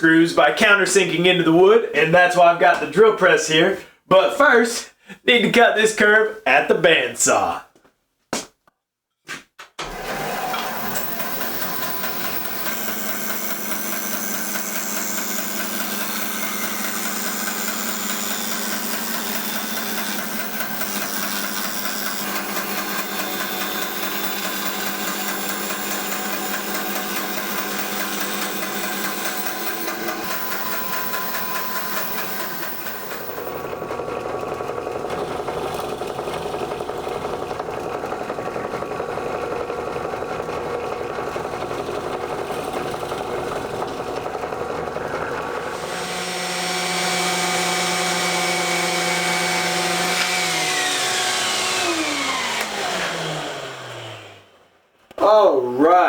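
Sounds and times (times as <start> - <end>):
bandsaw cutting wood: 9.8 - 54.6
power tool running: 9.8 - 54.6.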